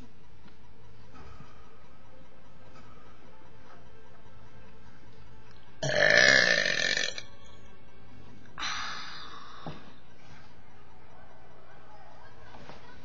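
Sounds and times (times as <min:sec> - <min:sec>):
man burping: 0:05.8 - 0:07.2.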